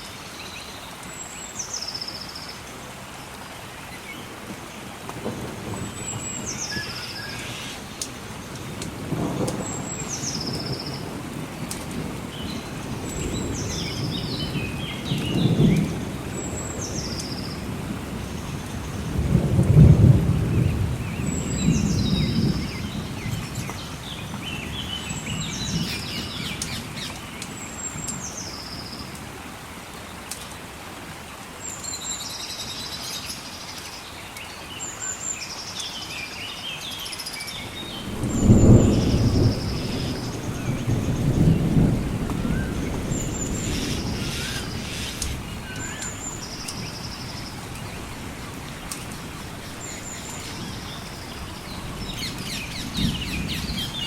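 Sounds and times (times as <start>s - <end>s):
steady rain: 0.0s - 54.0s
thunder rumbling: 4.5s - 27.3s, 37.5s - 54.0s.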